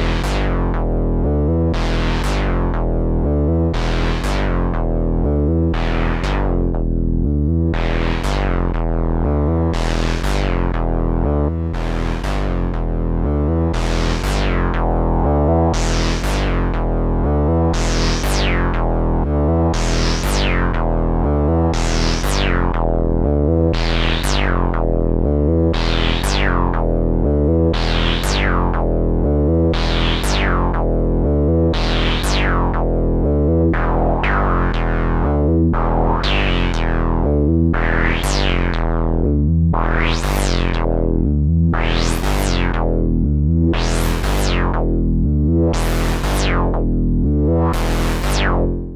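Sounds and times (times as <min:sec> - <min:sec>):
stepping run of low notes: 0:00.0 - 0:48.9
synthesizer sequenced pattern: 0:00.0 - 0:48.9
bright synth note filter sweep: 0:47.5 - 0:48.7.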